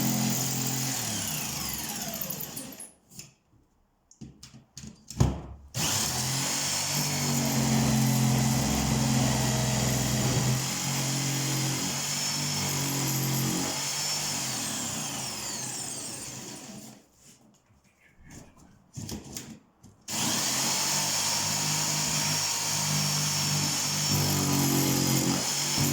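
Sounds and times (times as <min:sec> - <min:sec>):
electric drill running: 0:00.0 - 0:02.8, 0:05.8 - 0:16.8, 0:20.1 - 0:25.9.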